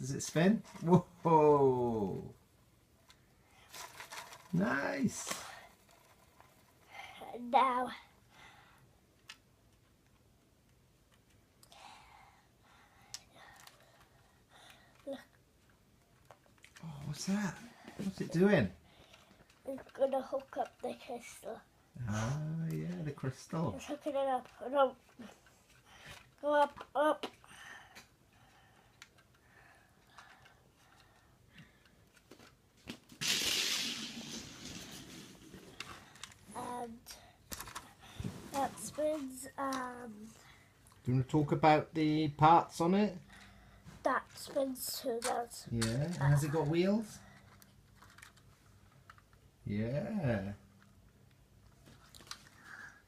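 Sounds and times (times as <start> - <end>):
plastic model rustling: 3.0 - 8.0, 13.4 - 21.6, 22.8 - 27.4, 30.0 - 41.1, 43.4 - 49.5, 51.7 - 52.9
faint clicks and knocks: 47.3 - 49.5.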